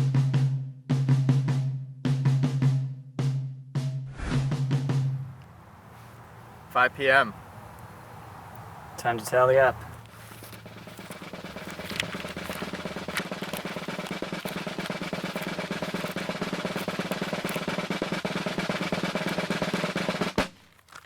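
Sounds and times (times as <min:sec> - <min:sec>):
sharp drum hit: 0:04.1 - 0:05.1, 0:10.8 - 0:20.5
snare drum roll: 0:04.1 - 0:05.1, 0:10.6 - 0:20.5.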